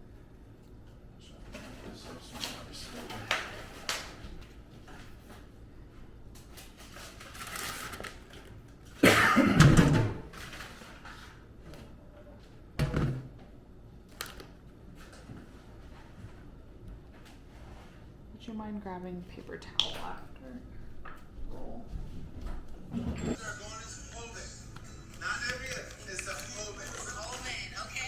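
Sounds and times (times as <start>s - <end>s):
knocks and thuds of kitchen items: 9.4s - 10.4s, 12.8s - 13.5s.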